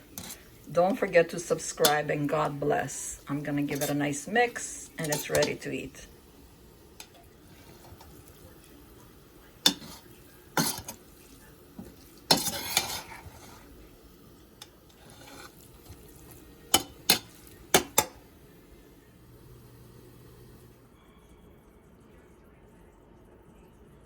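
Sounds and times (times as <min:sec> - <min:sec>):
utensil clacking: 0:00.0 - 0:06.0
utensil scraping a pot: 0:00.0 - 0:06.1, 0:07.0 - 0:08.4, 0:09.6 - 0:13.9, 0:14.6 - 0:18.2.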